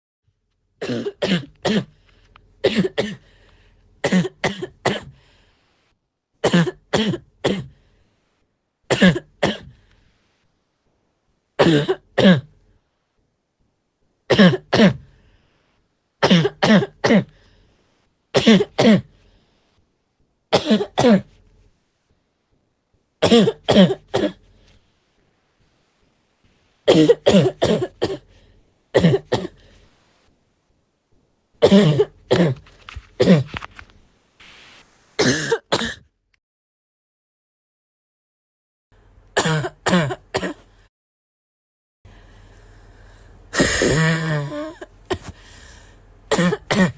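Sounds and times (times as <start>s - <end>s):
girl coughing: 0.8s - 1.9s, 2.6s - 3.2s, 4.0s - 5.1s, 6.4s - 7.7s, 8.9s - 9.7s, 11.6s - 12.5s, 16.2s - 17.3s, 20.6s - 21.3s, 23.2s - 24.4s, 26.9s - 28.3s, 29.0s - 29.6s, 31.6s - 32.6s, 35.2s - 36.1s, 39.4s - 40.7s, 43.5s - 45.6s, 46.3s - 46.9s.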